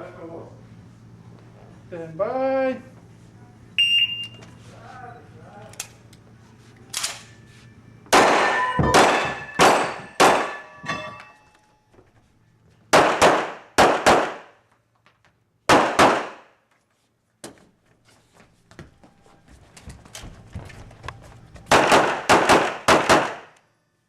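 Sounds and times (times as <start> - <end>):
handgun shots: 8.1 - 10.7, 13.0 - 14.5, 15.7 - 16.5, 21.7 - 23.6.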